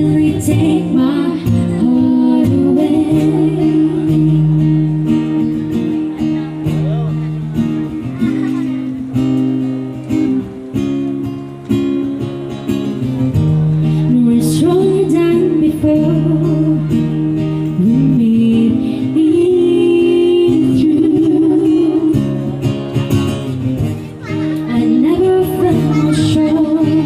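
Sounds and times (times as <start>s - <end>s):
person singing: 0.0s - 5.0s, 13.9s - 22.4s, 24.2s - 27.0s
acoustic guitar: 0.0s - 27.0s.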